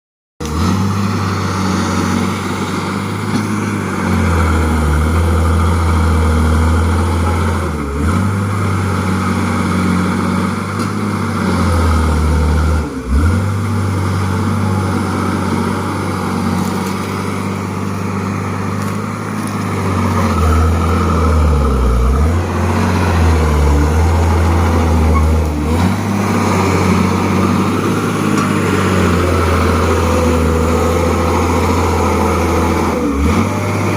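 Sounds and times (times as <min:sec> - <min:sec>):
bulldozer diesel engine running: 0:00.4 - 0:33.9.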